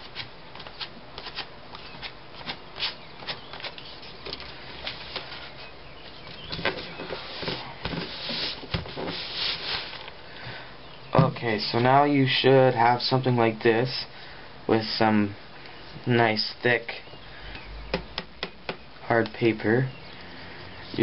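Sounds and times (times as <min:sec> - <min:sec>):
paper scraping and rustling: 0:00.0 - 0:10.1.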